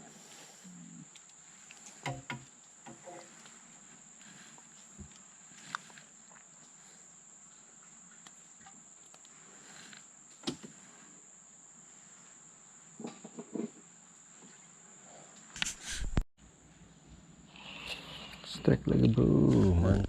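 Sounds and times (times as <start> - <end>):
insects trilling: 0.0 - 15.6.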